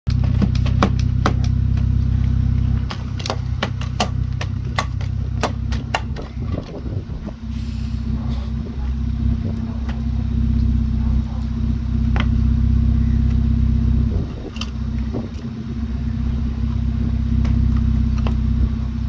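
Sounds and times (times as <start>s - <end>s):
excavator engine running: 0.0s - 19.0s
sharp knocks and clacks: 0.1s - 6.8s.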